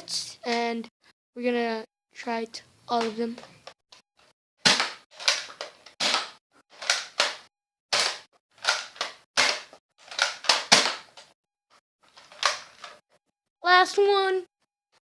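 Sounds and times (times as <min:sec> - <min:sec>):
dart blaster clacks and puffs: 0:04.6 - 0:11.4.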